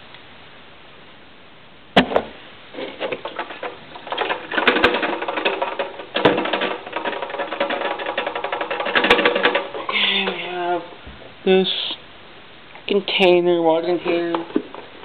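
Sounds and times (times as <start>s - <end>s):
plastic parts rattling: 2.8s - 10.9s.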